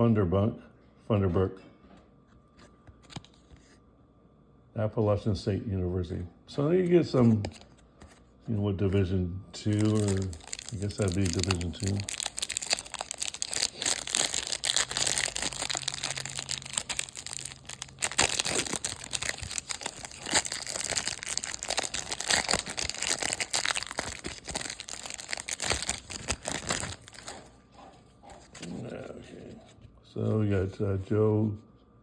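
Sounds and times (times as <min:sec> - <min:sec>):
cards being handled: 0:02.4 - 0:03.8, 0:06.8 - 0:08.4, 0:09.6 - 0:27.6, 0:28.3 - 0:29.8
plastic wrapper crinkling and tearing: 0:09.6 - 0:27.6.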